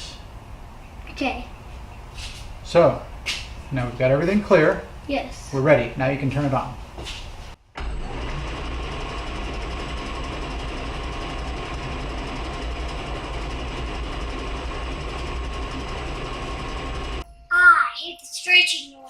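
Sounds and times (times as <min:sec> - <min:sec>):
lathe motor humming and whining: 0:07.8 - 0:17.2.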